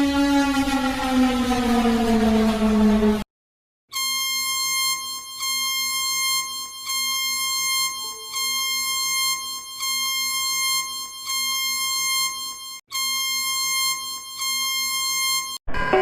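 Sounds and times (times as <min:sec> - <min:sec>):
pulsing electronic alert tone: 0:04.0 - 0:15.6.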